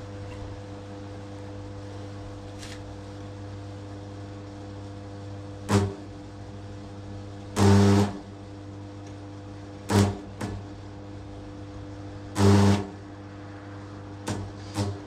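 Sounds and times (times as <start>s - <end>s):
steady electrical hum: 0.0s - 15.0s
electric hammer drill bursts: 7.6s - 8.2s, 9.9s - 10.3s, 12.3s - 13.0s.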